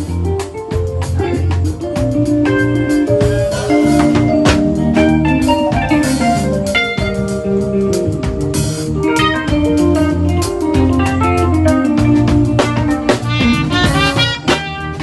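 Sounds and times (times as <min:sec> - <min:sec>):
drum kit hits: 0:00.0 - 0:15.0
held melodic notes: 0:00.0 - 0:15.0
sustained bass line: 0:00.0 - 0:15.0.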